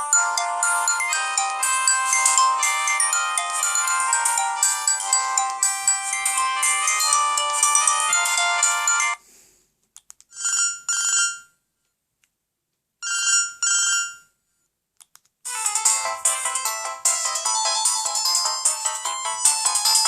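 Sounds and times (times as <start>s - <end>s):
electronic ringtone melody: 0.0s - 9.2s, 15.5s - 20.0s
trilling phone ring: 0.0s - 9.2s, 10.4s - 11.5s, 13.0s - 14.3s.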